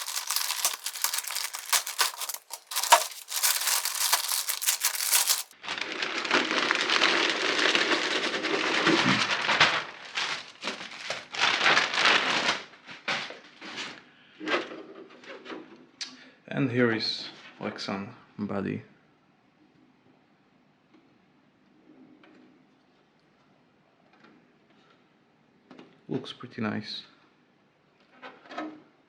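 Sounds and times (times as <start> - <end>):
plastic bag crinkling: 0.0 - 5.6.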